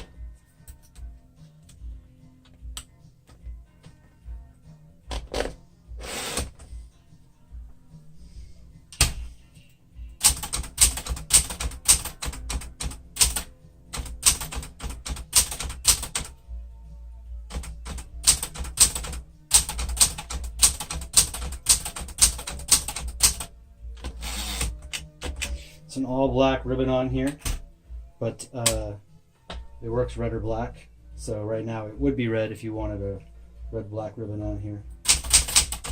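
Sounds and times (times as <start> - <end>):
typewriter keys striking: 10.2 - 16.3, 17.5 - 25.6, 35.0 - 35.9.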